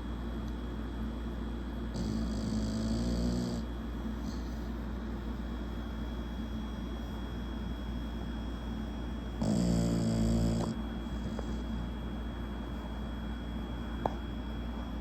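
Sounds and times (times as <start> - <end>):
steady low hum: 0.0 - 15.0
dog snoring: 1.9 - 4.8, 9.3 - 12.0.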